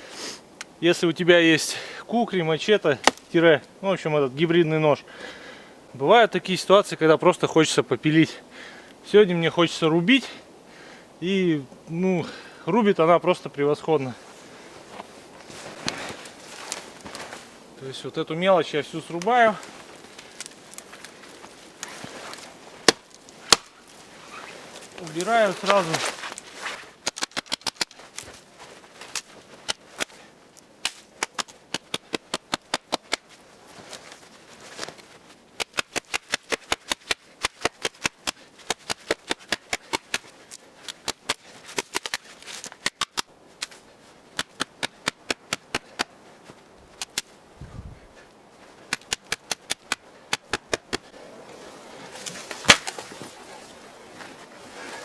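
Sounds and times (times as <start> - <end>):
knife chopping dry wood: 3.0 - 3.3, 22.8 - 23.8, 30.8 - 33.3, 35.6 - 40.3, 44.4 - 46.1, 48.9 - 51.1, 52.3 - 53.2.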